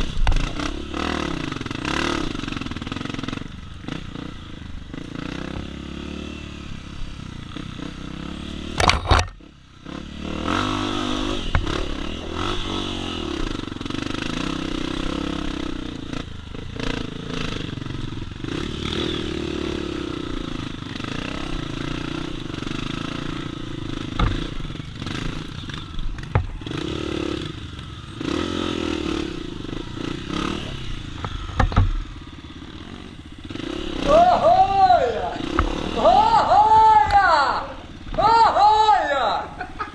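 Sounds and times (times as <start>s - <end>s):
motorcycle engine revving: 0.0s - 39.9s
hard knocks and clatter: 24.1s - 24.5s, 31.2s - 32.0s.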